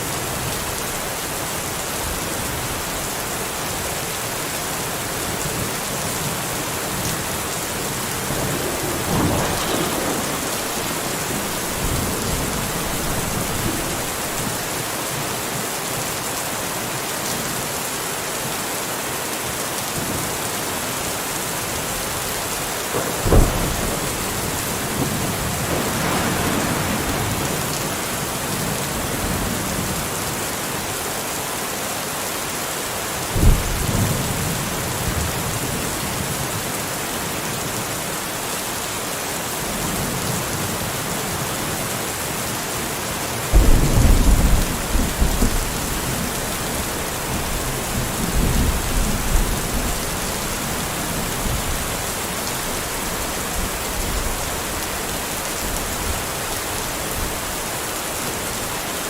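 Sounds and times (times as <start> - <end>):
steady rain: 0.0 - 59.0
thunder clap and rumble: 5.4 - 14.9, 22.9 - 30.2, 33.4 - 35.5, 43.5 - 52.2.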